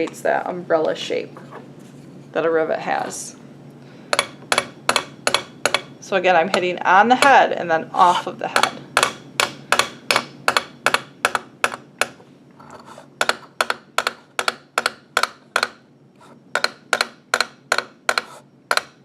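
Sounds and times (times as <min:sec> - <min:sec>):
hammer tapping wire: 0:04.1 - 0:05.9, 0:08.0 - 0:15.8, 0:16.5 - 0:19.0.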